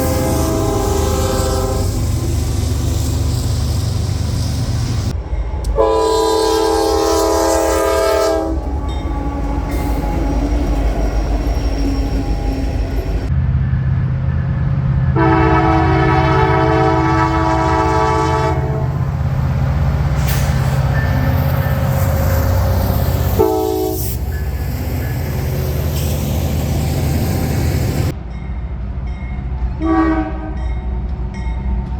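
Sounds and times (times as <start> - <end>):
locomotive air horn: 0.0 - 3.1, 5.6 - 11.3, 15.2 - 19.1, 23.2 - 24.4, 29.8 - 30.6
train rumbling: 0.0 - 31.9.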